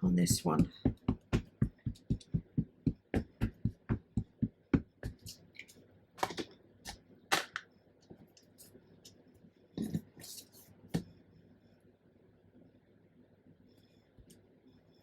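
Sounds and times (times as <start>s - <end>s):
light tapping of stamping: 0.3s - 5.4s.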